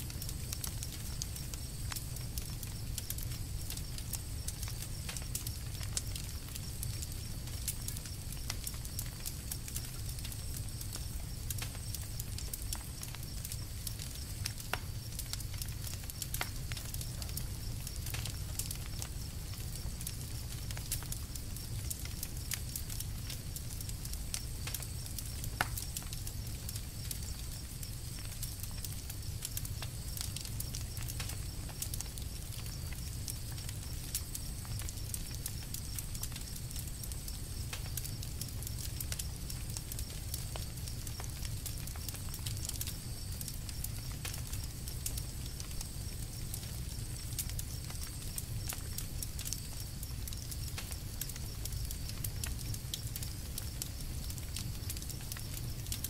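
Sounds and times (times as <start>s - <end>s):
campfire crackling: 0.0s - 56.0s.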